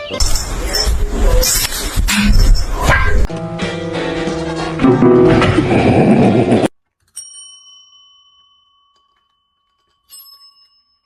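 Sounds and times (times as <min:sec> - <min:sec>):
small metal bell dinging: 0:07.1 - 0:11.0.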